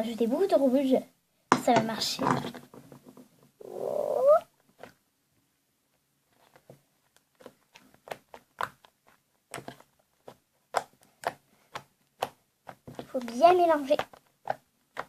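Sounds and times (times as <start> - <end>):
slime squelching: 6.3 - 15.0.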